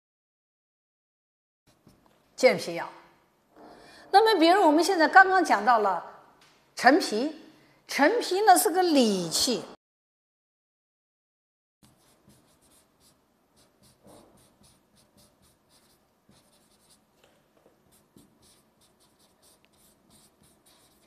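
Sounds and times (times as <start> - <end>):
chalk scratching on blackboard: 11.8 - 17.1, 17.8 - 21.0.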